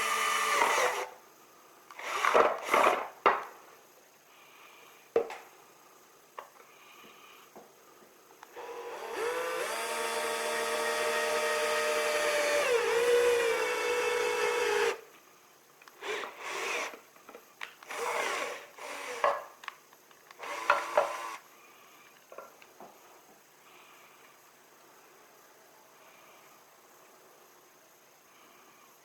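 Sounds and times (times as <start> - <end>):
power tool motor whining: 0.0 - 1.1, 2.0 - 3.0, 8.5 - 15.0, 17.8 - 19.4, 20.4 - 21.4.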